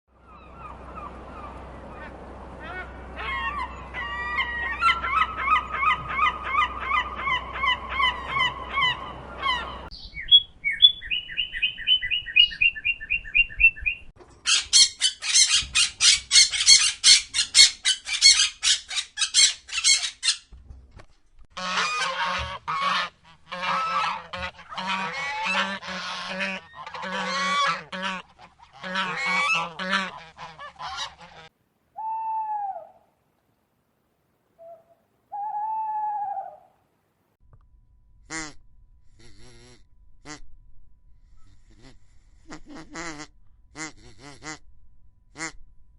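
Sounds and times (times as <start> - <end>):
seagulls calling: 0.1 - 20.5, 21.6 - 33.1
geese honking: 0.2 - 9.9, 21.5 - 31.5, 38.3 - 38.6, 41.5 - 44.6
bird singing whistled notes: 9.9 - 14.1
parrot squawking: 14.4 - 20.4
low rumble: 37.4 - 45.9.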